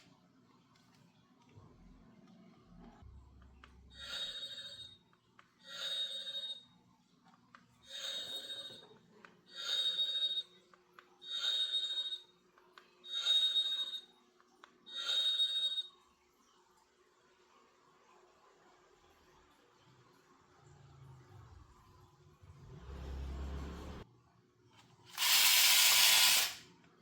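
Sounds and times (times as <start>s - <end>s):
toy electronic sound effect: 25.2s - 26.6s.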